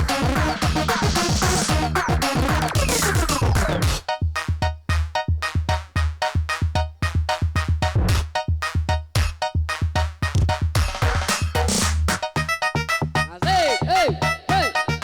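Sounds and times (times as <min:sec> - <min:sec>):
electronic dance remix: 0:00.0 - 0:04.0
synth stabs: 0:00.0 - 0:04.0
fast drum-machine beat: 0:00.0 - 0:04.1, 0:05.4 - 0:12.5
heavy bass: 0:00.0 - 0:15.0.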